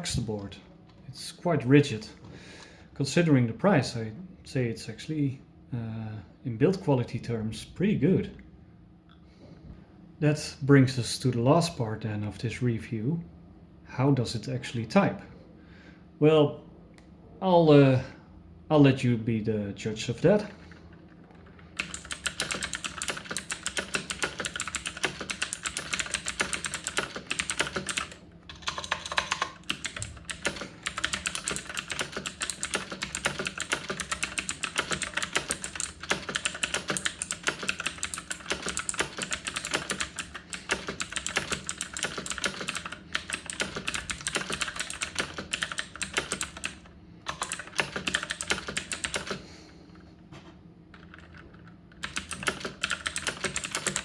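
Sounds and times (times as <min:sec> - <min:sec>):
fast typing on clicky keyboard: 0:21.3 - 0:49.4, 0:50.9 - 0:54.0.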